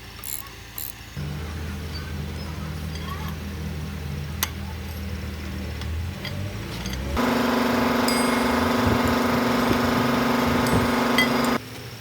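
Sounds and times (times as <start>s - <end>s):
power tool running: 6.9s - 11.6s.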